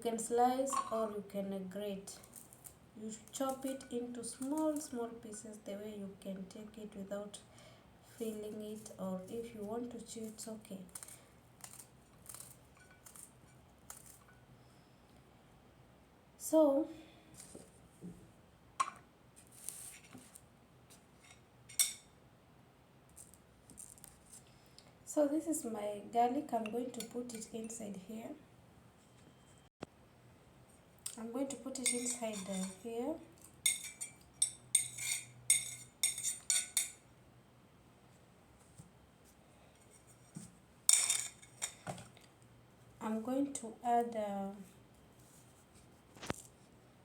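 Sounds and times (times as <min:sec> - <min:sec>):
utensil scraping: 0:31.7 - 0:32.8.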